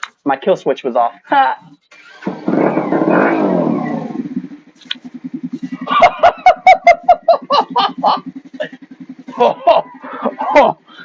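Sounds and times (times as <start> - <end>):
engine sharp pops: 1.9 - 9.6
electric starter cranking engine: 1.9 - 10.3.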